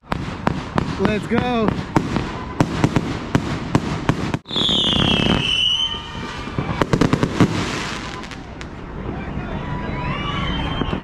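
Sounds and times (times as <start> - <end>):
fireworks popping and banging: 0.0 - 8.8
high falling whistle: 4.4 - 6.8, 9.8 - 11.0.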